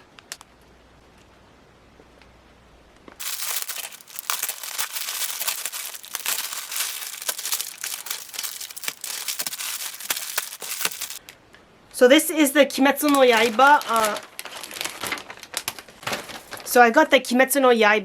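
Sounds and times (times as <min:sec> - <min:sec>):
packaging crinkling: 0:03.2 - 0:11.2, 0:13.0 - 0:16.8.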